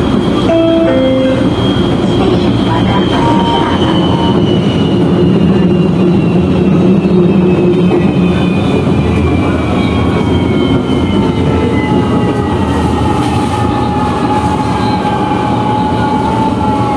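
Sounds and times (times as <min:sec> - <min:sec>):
train rumble inside carriage: 0:00.0 - 0:16.9.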